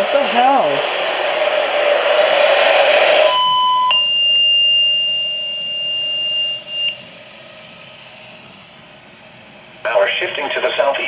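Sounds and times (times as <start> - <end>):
high-pitched steady beep: 3.3 - 7.0
loud hiss: 4.6 - 11.0.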